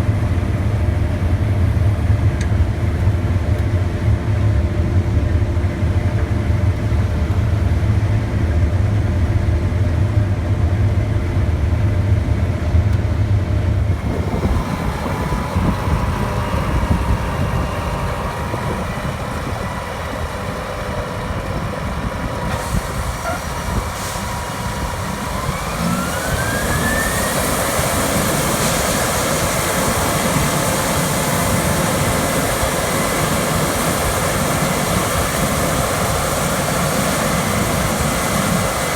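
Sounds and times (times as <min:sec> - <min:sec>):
combine harvester engine rumble: 0:00.0 - 0:38.9
broad rushing noise: 0:13.8 - 0:38.9
thin steady whine: 0:13.8 - 0:38.9.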